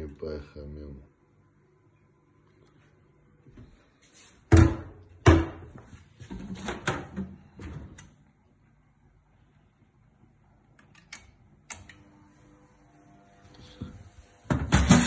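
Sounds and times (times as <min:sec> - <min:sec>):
loud knocks of cookware: 0:04.5 - 0:05.8, 0:14.5 - 0:15.0.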